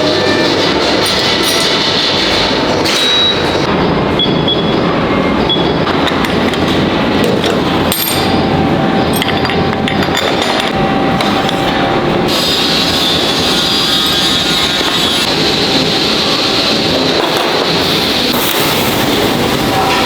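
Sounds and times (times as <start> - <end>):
metalworking machinery running: 0.0 - 20.0
metallic knocks: 5.9 - 11.8.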